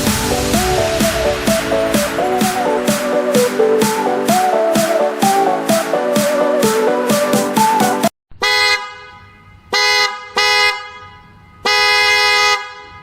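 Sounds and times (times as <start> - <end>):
electric trumpet car horn blasts: 8.4 - 13.0.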